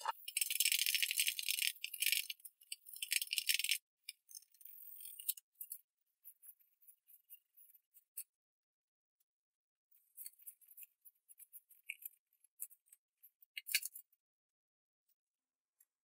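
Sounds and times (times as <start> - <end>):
clicks and clinks of small parts: 10.0 - 14.2.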